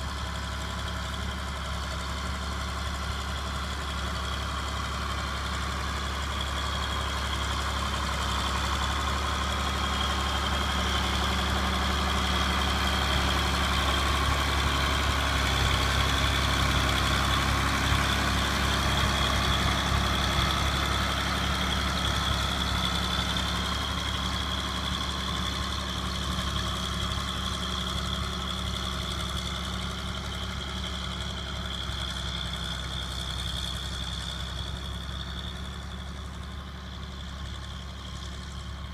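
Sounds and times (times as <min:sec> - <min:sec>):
tractor diesel engine under load: 0:00.0 - 0:38.9.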